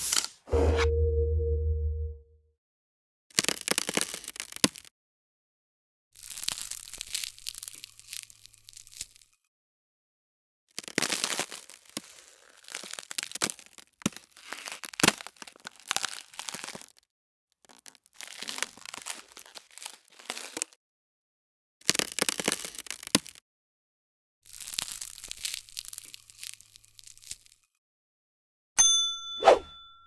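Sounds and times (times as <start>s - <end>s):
ice cracking and snapping: 3.4s - 4.9s, 10.8s - 17.0s, 17.6s - 20.8s, 21.8s - 23.4s, 24.5s - 27.6s.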